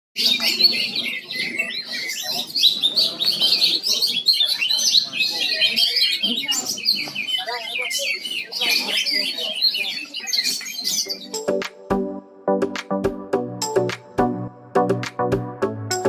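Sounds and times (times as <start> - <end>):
lovebird chirps and trills: 0.2 - 11.6.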